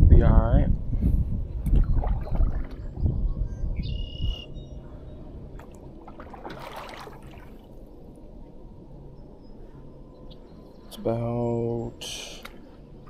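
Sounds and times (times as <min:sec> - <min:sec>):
wind buffeting microphone: 0:00.0 - 0:11.7
water swishing: 0:01.8 - 0:03.0, 0:05.4 - 0:08.4.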